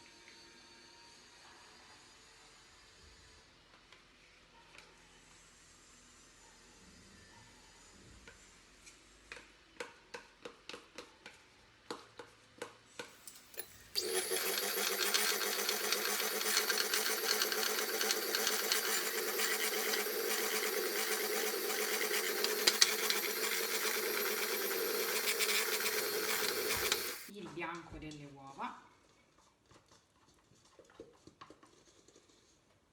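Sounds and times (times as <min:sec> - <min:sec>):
electric hand mixer running: 0:13.5 - 0:27.3.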